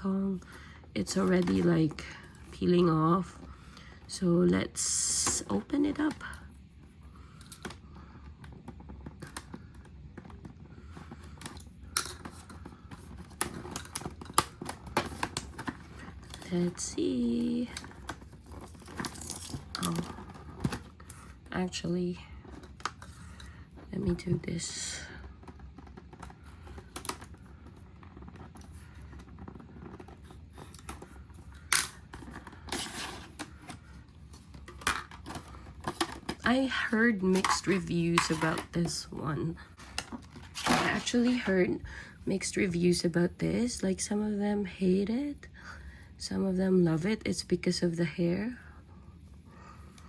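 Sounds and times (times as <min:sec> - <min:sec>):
packaging clicks and rustles: 0:07.1 - 0:24.4, 0:25.0 - 0:39.1, 0:39.7 - 0:42.1.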